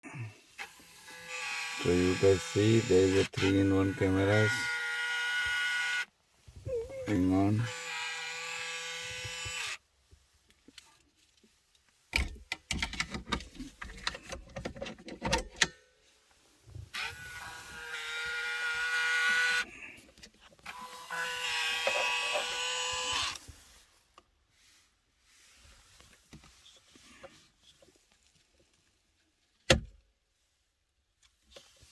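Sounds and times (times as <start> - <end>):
small electric motor whine: 0.6 - 6.1, 7.1 - 9.8, 17.0 - 19.7, 20.7 - 23.4
handling clicks and knocks: 12.2 - 15.8.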